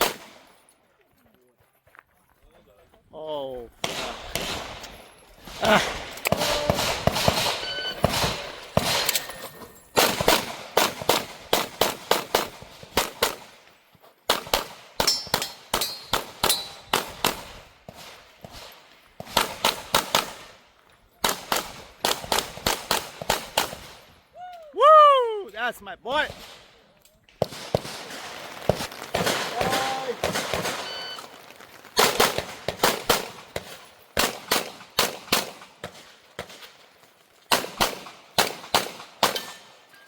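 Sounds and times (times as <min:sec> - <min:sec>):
pistol shots: 0:00.0 - 0:00.5, 0:03.8 - 0:09.4, 0:10.0 - 0:13.6, 0:14.3 - 0:20.6, 0:21.2 - 0:24.0, 0:27.4 - 0:31.2, 0:32.0 - 0:36.6, 0:37.5 - 0:39.8.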